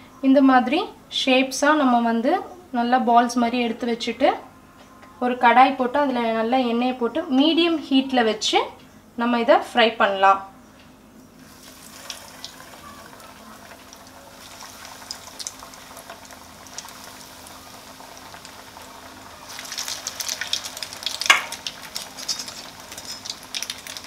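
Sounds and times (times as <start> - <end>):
chicken frying in hot oil: 11.4 - 24.0.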